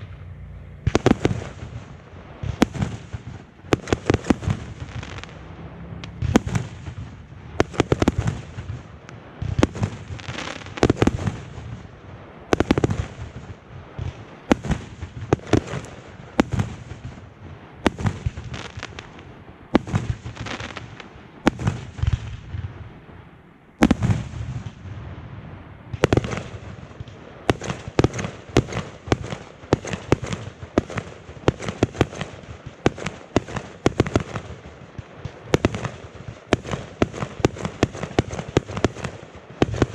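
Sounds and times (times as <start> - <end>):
big firework bang: 0.0 - 11.9
fireworks bangs and crackle: 0.0 - 39.9.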